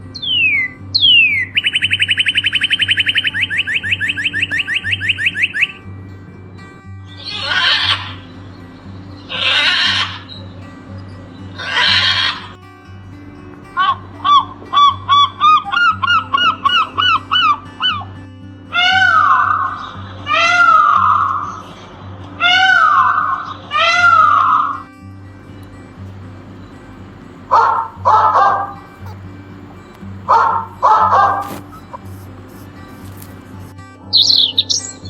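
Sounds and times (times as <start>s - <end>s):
steady low background hum: 0.0s - 35.0s
fast bird-like trill: 0.1s - 5.8s, 7.1s - 10.5s, 11.4s - 12.6s, 13.8s - 18.1s, 26.6s - 29.3s, 30.3s - 32.9s, 34.1s - 35.0s
short rising calls: 0.3s - 5.8s
falling whistle: 1.5s - 5.8s
harsh animal calls: 7.1s - 8.3s, 9.0s - 10.6s, 11.5s - 12.6s, 13.8s - 24.9s, 26.7s - 32.9s.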